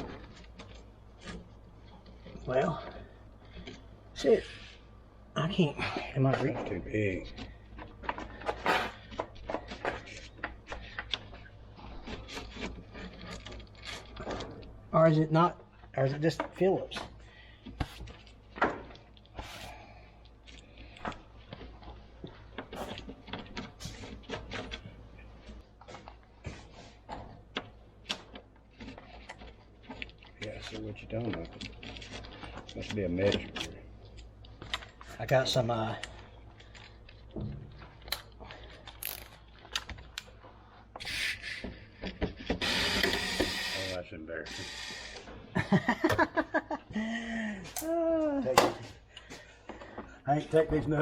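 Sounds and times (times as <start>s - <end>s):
tools rattling: 27.1s - 40.5s.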